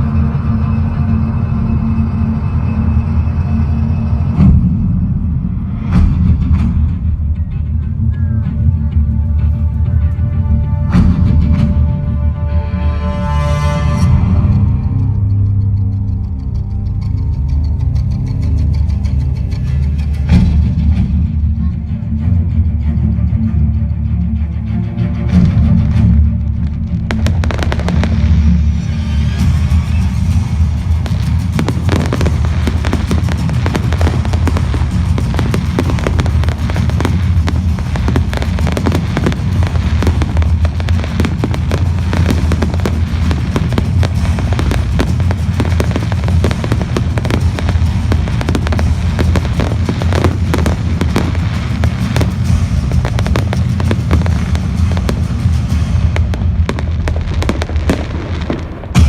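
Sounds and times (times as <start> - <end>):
loud music: 0.0 - 59.0
fireworks crackling and popping: 26.4 - 59.0.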